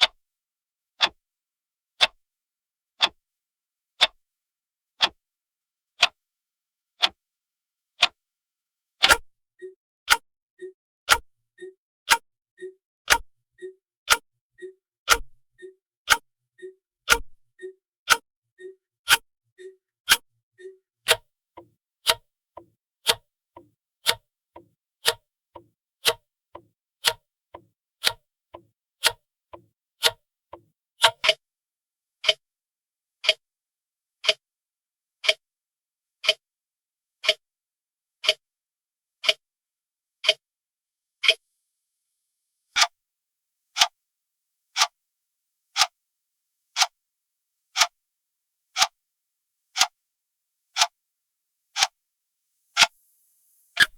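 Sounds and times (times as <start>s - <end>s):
clock ticking: 9.0s - 31.4s.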